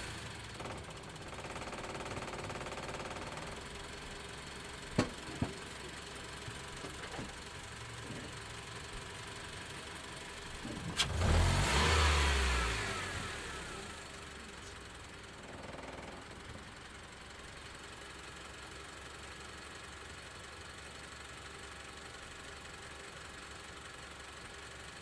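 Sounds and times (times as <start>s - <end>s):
car engine revving and idling: 0.0s - 17.7s.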